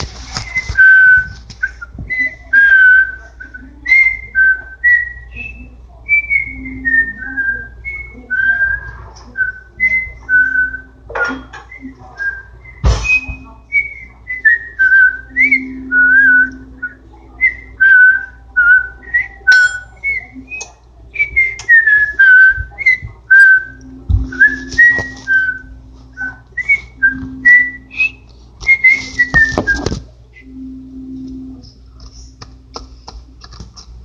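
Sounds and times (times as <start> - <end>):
person whistling a tune: 18.7 - 23.7.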